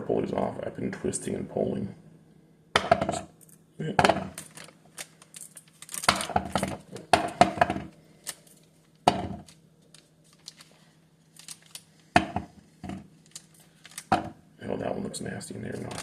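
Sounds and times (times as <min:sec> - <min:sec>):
grapes rustling: 0:04.2 - 0:14.3, 0:15.5 - 0:16.0.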